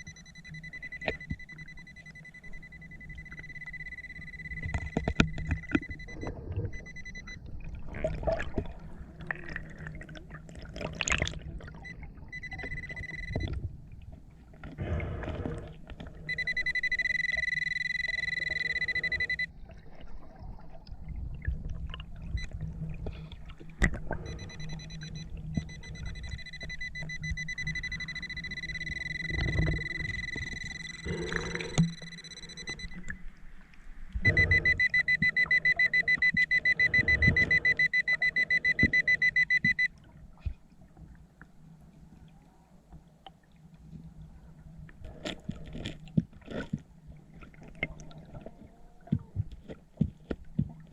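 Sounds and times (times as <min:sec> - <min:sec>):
metal detector high-pitched tone: 0:00.0 - 0:07.4, 0:12.3 - 0:13.5, 0:16.3 - 0:19.5, 0:24.3 - 0:33.1, 0:34.2 - 0:39.9
low water noise: 0:00.0 - 0:50.9.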